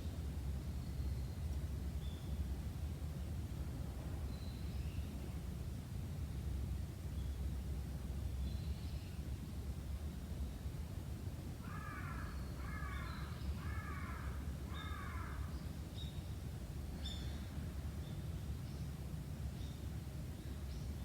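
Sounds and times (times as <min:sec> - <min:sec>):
crow cawing: 0:11.6 - 0:15.4.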